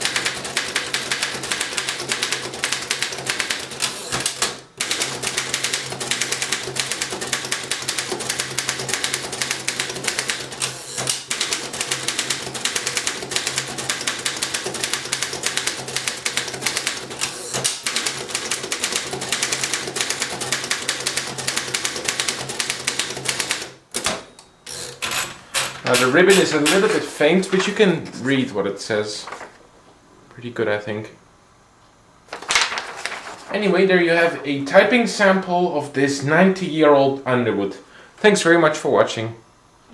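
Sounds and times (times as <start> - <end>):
manual typewriter typing: 0.0 - 24.1, 24.7 - 27.0.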